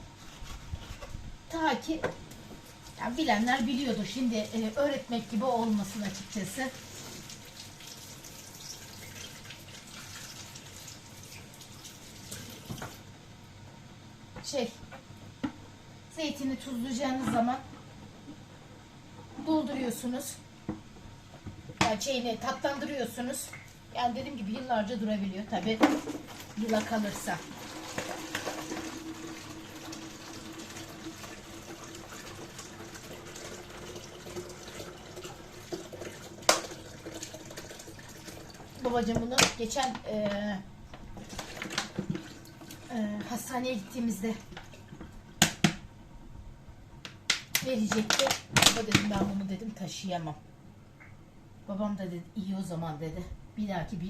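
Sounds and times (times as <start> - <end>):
tap water running into sink: 25.9 - 39.4.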